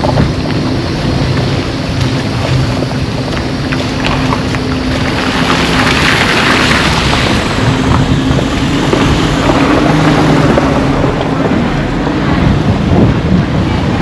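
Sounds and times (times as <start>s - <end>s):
heavy rain: 0.0s - 14.0s
low engine hum: 0.0s - 14.0s
wind buffeting microphone: 0.0s - 14.0s.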